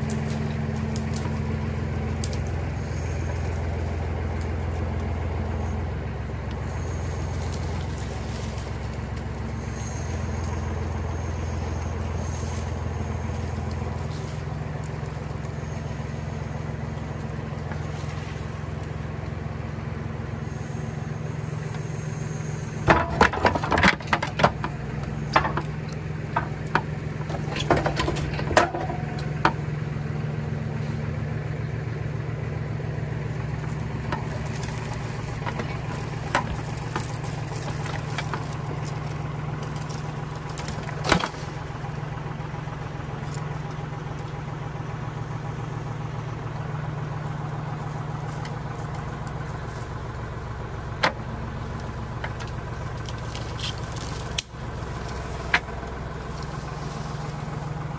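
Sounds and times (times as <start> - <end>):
engine idling: 0.0 - 57.9
knocks and clanks: 22.8 - 29.6.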